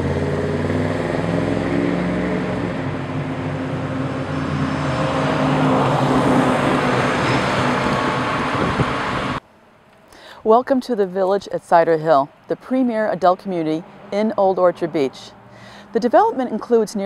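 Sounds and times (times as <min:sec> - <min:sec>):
low engine hum: 0:00.0 - 0:09.9, 0:12.3 - 0:17.0
road noise rushing: 0:00.0 - 0:10.6, 0:11.7 - 0:17.0.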